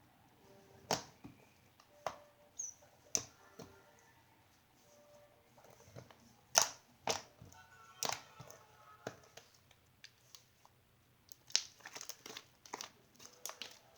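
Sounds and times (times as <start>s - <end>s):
slime squishing by hand: 5.5s - 13.9s.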